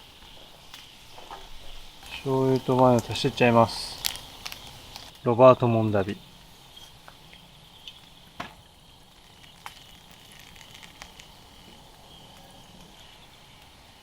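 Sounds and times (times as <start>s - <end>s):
campfire crackles: 0.0s - 14.0s
sauce sizzling in a skillet: 0.0s - 14.0s.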